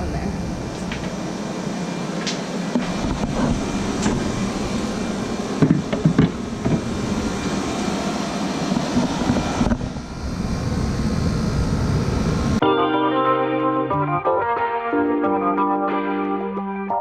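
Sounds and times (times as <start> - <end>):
fan-like background noise: 0.0 - 12.6.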